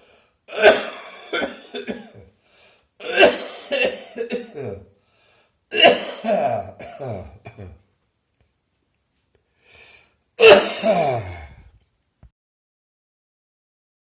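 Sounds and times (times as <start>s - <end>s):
person coughing hoarsely: 0.5s - 2.3s, 3.0s - 4.9s, 5.7s - 7.8s, 10.4s - 11.6s
faint breath in: 2.4s - 2.9s, 5.0s - 5.6s, 9.5s - 10.2s.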